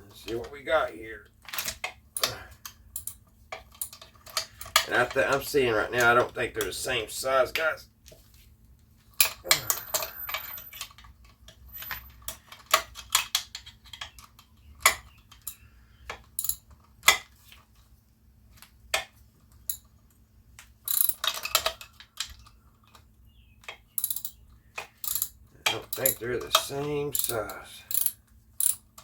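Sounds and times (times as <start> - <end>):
sockets and ratchet wrench clinking: 1.5 - 4.9, 9.2 - 14.1, 16.3 - 17.2, 19.6 - 19.9, 20.8 - 21.9, 24.0 - 29.0.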